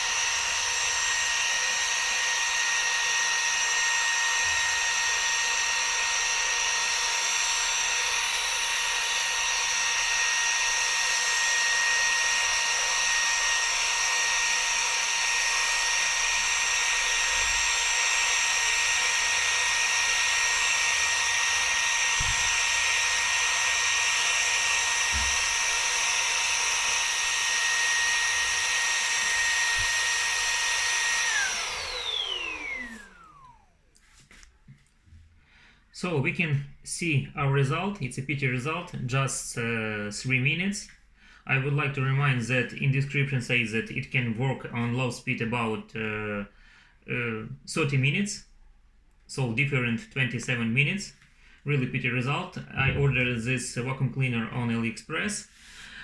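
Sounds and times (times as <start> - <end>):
vacuum motor spinning down: 0.0 - 33.9
stick vacuum whining: 0.0 - 34.8, 51.6 - 54.8.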